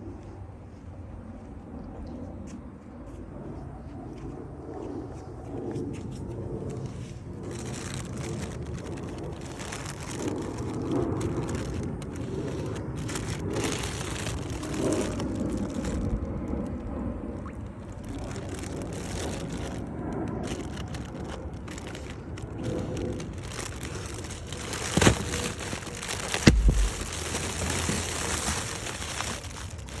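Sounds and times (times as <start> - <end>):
rubbing rubber balloons: 6.8 - 16.3, 17.8 - 30.0
balloons popping: 23.4 - 30.0
low thud: 26.0 - 28.2.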